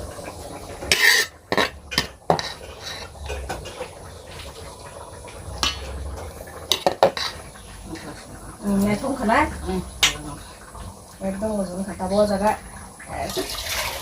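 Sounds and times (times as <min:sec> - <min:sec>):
metal cookware scraping: 0:00.0 - 0:10.5
metal cookware clinking: 0:00.8 - 0:04.6, 0:05.3 - 0:09.4.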